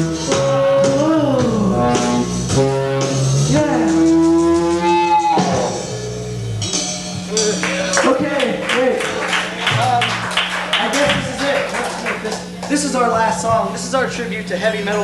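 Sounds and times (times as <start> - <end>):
live rock band playing: 0.0 - 15.0
person singing: 0.7 - 2.1, 3.4 - 5.7.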